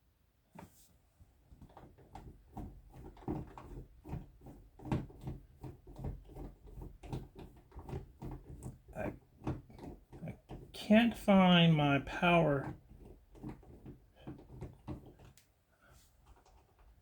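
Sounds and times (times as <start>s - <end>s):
screwdriver on doorknob screws: 4.8s - 10.7s, 12.6s - 15.4s.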